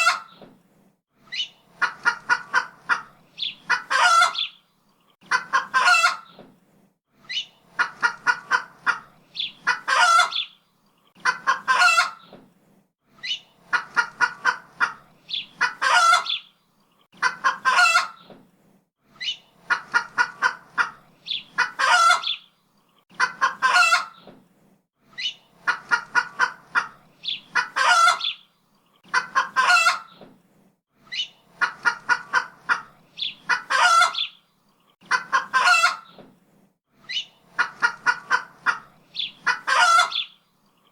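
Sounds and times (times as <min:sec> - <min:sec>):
chicken clucking and squawking: 0:00.0 - 0:00.4, 0:01.3 - 0:04.6, 0:05.2 - 0:06.4, 0:07.3 - 0:10.6, 0:11.2 - 0:12.3, 0:13.2 - 0:16.5, 0:17.1 - 0:18.3, 0:19.2 - 0:22.5, 0:23.1 - 0:24.3, 0:25.2 - 0:30.2, 0:31.1 - 0:34.4, 0:35.0 - 0:36.2, 0:37.1 - 0:40.4.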